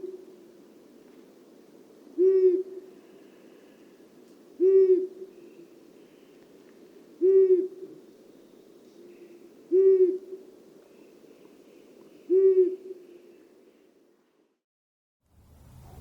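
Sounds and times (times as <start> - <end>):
owl low hoots: 0.0 - 0.5, 2.2 - 4.0, 4.6 - 6.4, 7.2 - 8.1, 9.0 - 13.8.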